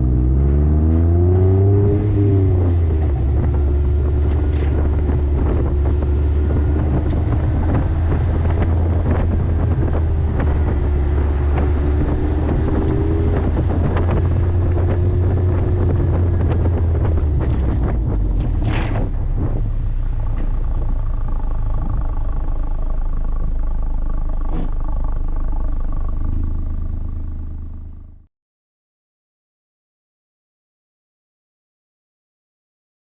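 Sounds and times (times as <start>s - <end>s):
motorcycle exhaust cruising: 0.0s - 28.3s
wind buffeting microphone: 1.3s - 27.2s.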